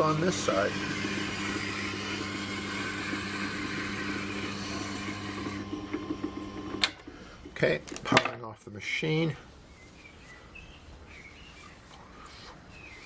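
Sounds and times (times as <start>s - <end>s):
sharpening machine motor hum: 0.0s - 7.0s.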